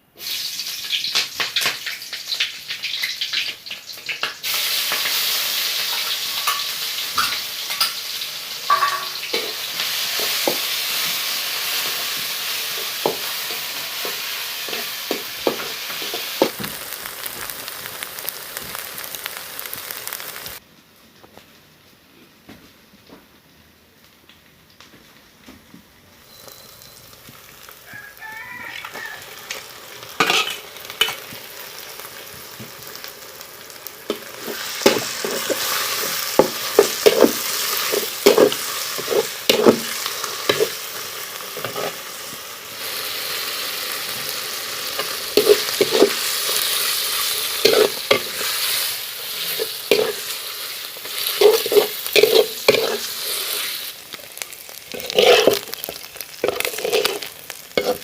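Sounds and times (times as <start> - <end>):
food sizzling in oil: 0.0 - 20.6, 26.2 - 58.0
utensil scraping pan: 30.2 - 31.2, 34.1 - 40.8, 41.6 - 42.0, 45.0 - 53.8, 54.9 - 58.0.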